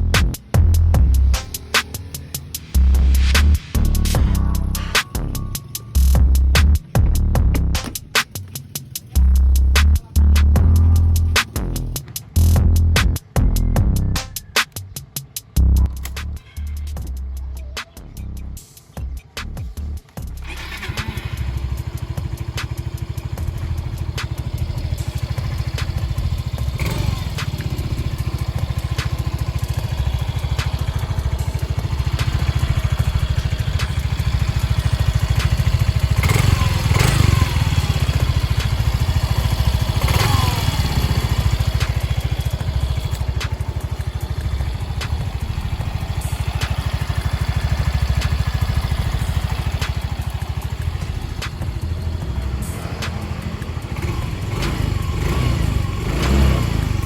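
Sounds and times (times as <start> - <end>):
scooter engine idling: 0.0 - 14.0, 18.8 - 57.0.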